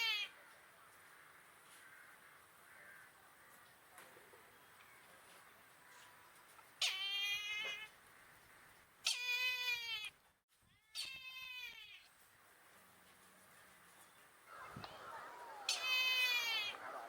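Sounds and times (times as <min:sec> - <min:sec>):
kite calling: 0:14.5 - 0:17.0.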